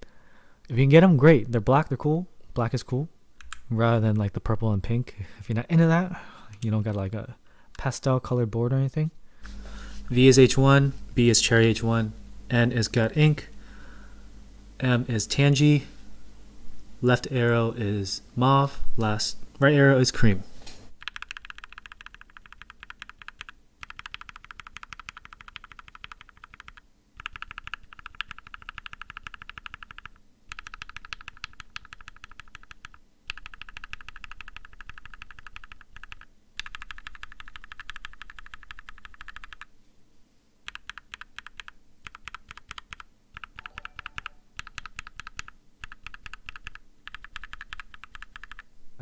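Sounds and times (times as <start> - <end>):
mechanical keyboard typing: 21.0 - 39.7, 40.7 - 48.7.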